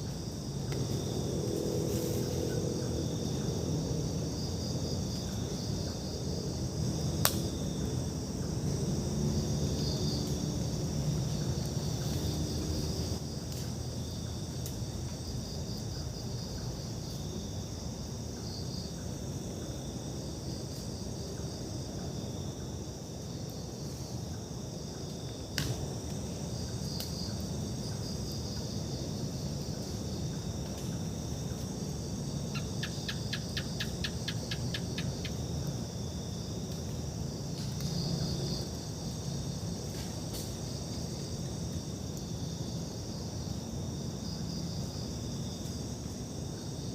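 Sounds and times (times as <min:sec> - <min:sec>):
crickets and insects calling: 0:00.0 - 0:46.9.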